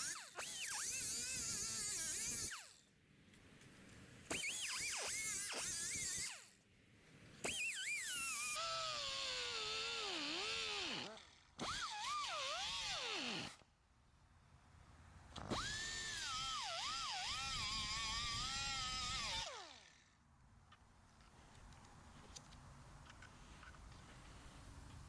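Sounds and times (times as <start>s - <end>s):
power tool whining on sheet metal: 0.0s - 2.8s, 4.3s - 6.5s, 7.4s - 13.7s, 15.4s - 20.0s.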